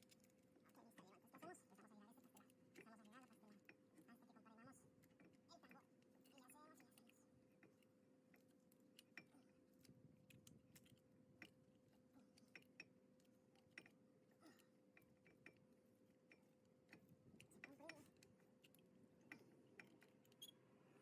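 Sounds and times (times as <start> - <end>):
tools clicking and tapping: 6.0 - 20.5.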